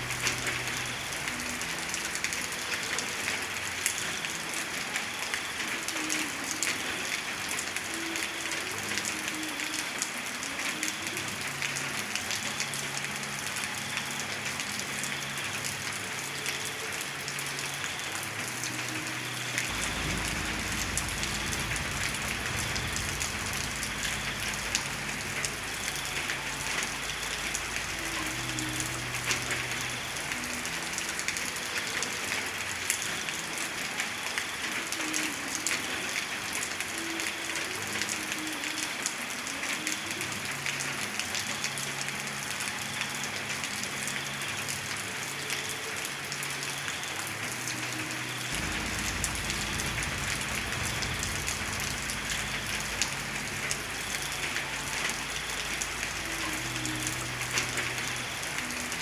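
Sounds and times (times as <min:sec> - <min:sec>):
steady rain falling: 0:00.0 - 0:59.0
low rumble: 0:19.7 - 0:25.5, 0:48.6 - 0:54.1.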